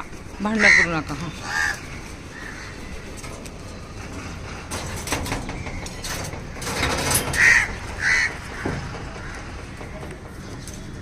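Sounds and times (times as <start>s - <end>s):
crows cawing: 0.4s - 4.6s, 7.3s - 10.7s.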